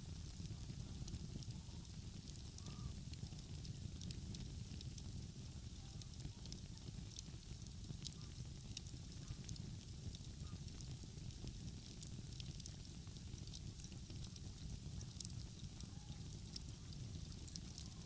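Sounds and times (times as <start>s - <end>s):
wood fire crackling: 0.0s - 18.0s
fire pops: 6.2s - 18.0s.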